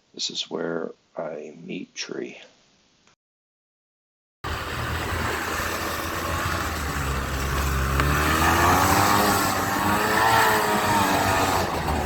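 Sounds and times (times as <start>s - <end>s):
snowmobile engine running: 4.4s - 12.0s.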